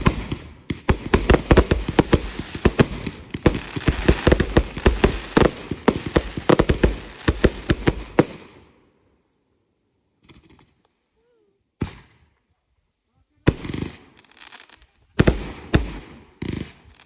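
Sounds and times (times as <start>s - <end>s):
fireworks bangs: 0.0s - 8.5s, 13.5s - 17.0s
fireworks crackling: 0.0s - 8.5s, 13.5s - 17.0s.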